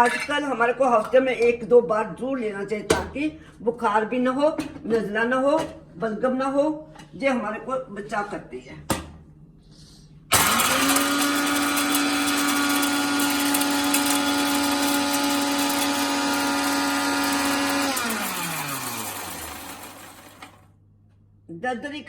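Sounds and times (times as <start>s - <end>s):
electric spice grinder motor: 10.3s - 20.6s.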